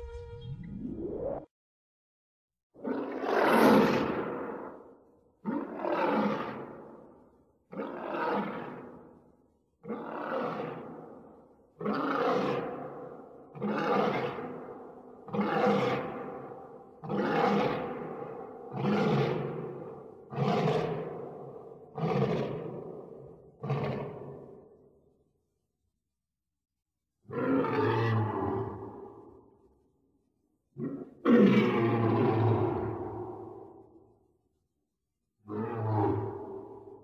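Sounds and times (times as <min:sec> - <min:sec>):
lion roaring: 0:05.4 - 0:07.0, 0:07.7 - 0:09.0, 0:09.8 - 0:11.2, 0:11.8 - 0:14.6, 0:15.3 - 0:24.6, 0:27.3 - 0:29.3, 0:30.8 - 0:33.7, 0:35.5 - 0:36.9.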